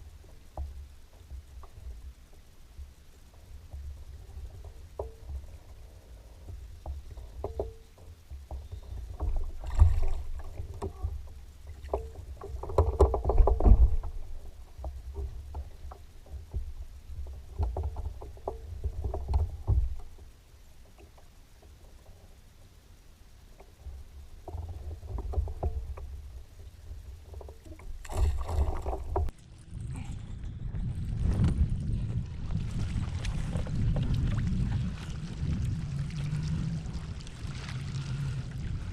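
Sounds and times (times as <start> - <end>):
knocks and clicks on a boat: 0.0 - 22.8, 23.6 - 29.4.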